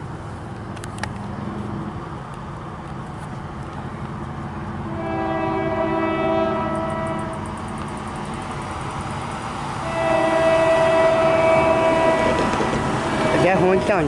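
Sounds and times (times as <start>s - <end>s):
low rumble of train: 0.0s - 14.0s
train air horn blast: 4.9s - 7.5s, 9.8s - 14.0s.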